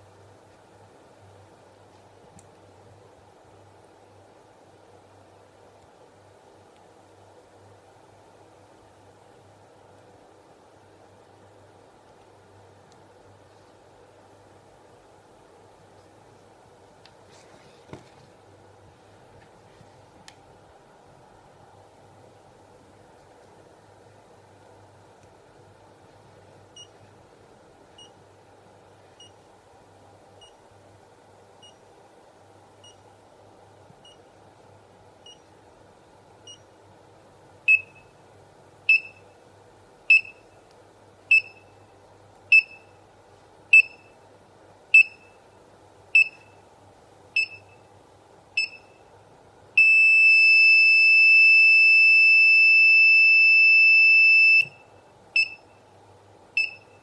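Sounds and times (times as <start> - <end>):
steady unbroken buzzer tone: 49.8 - 54.8.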